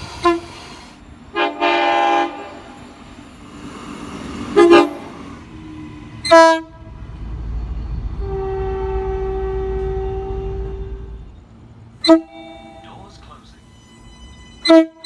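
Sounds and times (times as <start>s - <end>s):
train horn blasts: 0.0s - 2.8s, 4.5s - 5.2s, 6.2s - 7.0s, 8.2s - 11.4s, 12.0s - 15.0s
low rumble of passing train: 0.0s - 15.0s.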